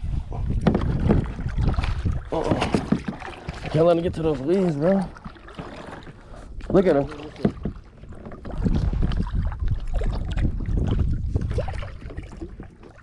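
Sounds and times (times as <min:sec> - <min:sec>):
low rumble on microphone: 0:00.0 - 0:04.4, 0:07.5 - 0:13.0
water sloshing around kayak: 0:00.0 - 0:13.0.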